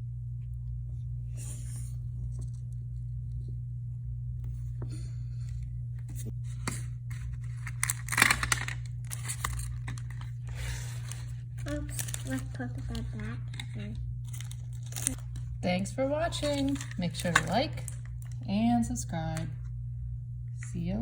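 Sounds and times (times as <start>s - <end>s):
low electrical hum: 0.0s - 21.0s
toy packaging rustling and clicking: 6.5s - 15.5s, 16.3s - 18.4s.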